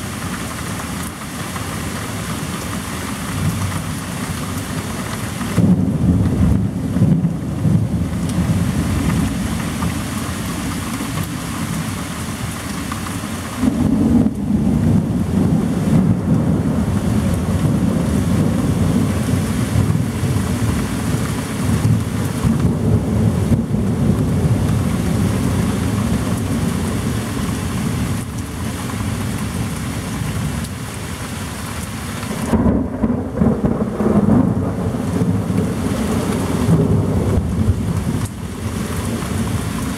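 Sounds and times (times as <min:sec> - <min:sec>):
heavy rain: 0:00.0 - 0:39.9
rolling thunder: 0:05.5 - 0:10.0, 0:13.6 - 0:28.3, 0:32.3 - 0:39.9.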